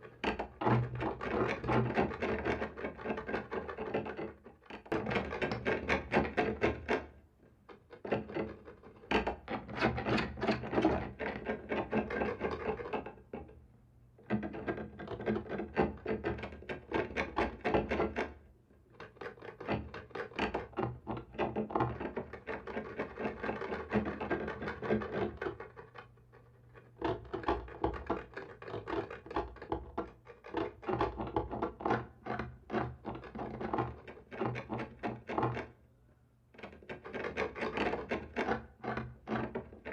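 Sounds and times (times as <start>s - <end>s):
clawing on a wooden wall: 14.2s - 35.8s.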